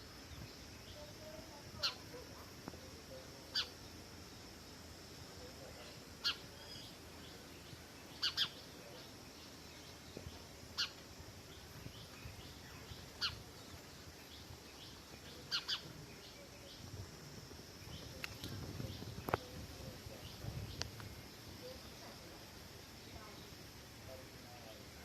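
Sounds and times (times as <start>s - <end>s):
sparrow chirping: 0.1s - 4.5s, 5.4s - 16.9s.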